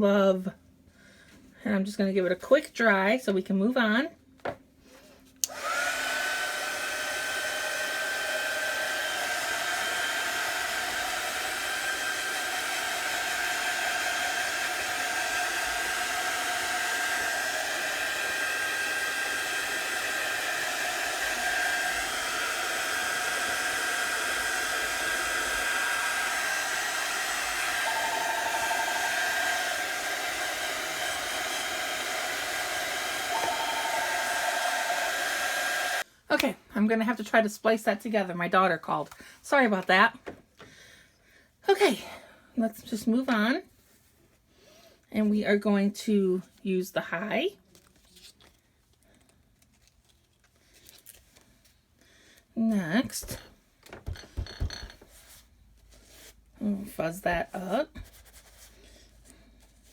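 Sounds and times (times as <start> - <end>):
hair dryer blowing: 5.4 - 36.1.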